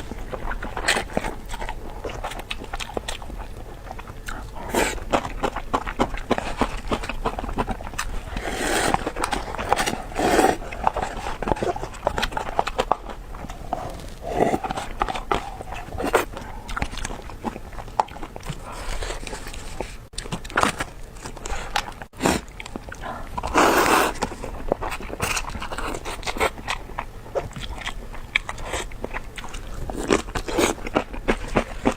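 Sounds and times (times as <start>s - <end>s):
wet chewing and lip-smacking: 0.0s - 31.9s
slurping noodles: 4.2s - 5.2s, 7.7s - 12.4s, 13.4s - 17.2s, 21.4s - 24.4s.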